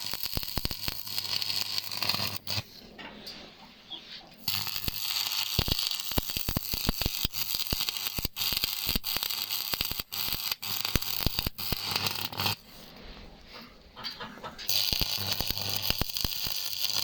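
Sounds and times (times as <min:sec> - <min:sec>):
welding arc crackling: 0:00.0 - 0:02.8, 0:04.4 - 0:12.7, 0:14.6 - 0:17.0.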